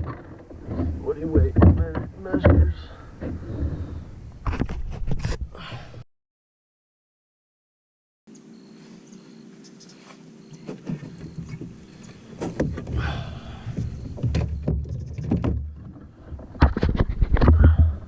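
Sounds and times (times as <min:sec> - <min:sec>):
knocks and thumps on plastic kayak: 0:00.0 - 0:03.4, 0:10.6 - 0:11.8, 0:12.4 - 0:18.0
faint steady hum: 0:08.3 - 0:18.0.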